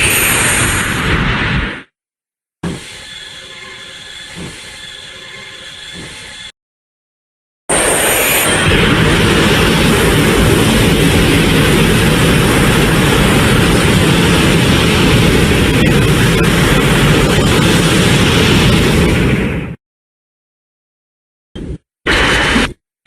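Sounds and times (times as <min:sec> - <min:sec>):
heat ray blast with deep rumble: 0:07.7 - 0:19.8.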